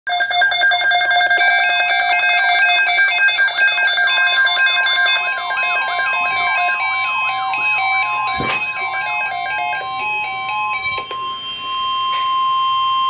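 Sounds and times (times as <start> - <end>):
steady alarm tones: 0.1 - 13.0
weather radio alert beeps: 3.4 - 13.0.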